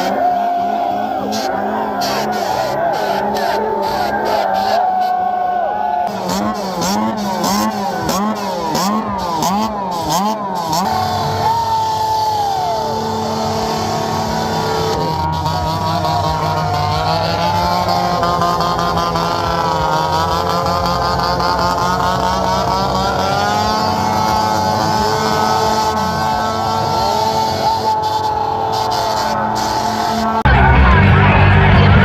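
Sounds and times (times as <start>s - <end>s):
engine revving: 0.0s - 32.0s
motocross engines running: 0.0s - 32.0s.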